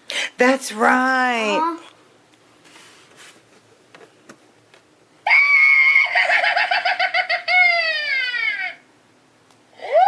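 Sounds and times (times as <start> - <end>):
shrill shriek into falling wail: 5.2 - 6.3.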